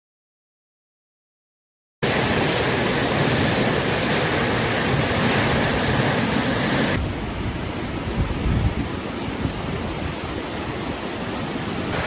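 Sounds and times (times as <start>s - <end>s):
river water rushing: 2.0s - 7.8s.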